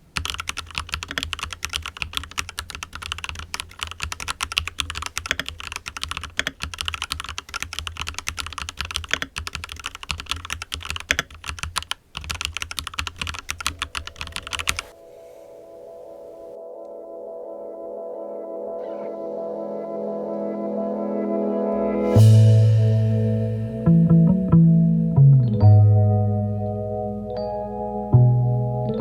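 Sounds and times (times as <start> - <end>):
fast mechanical keyboard typing: 0.0 - 14.9
soft ambient music: 13.6 - 29.0.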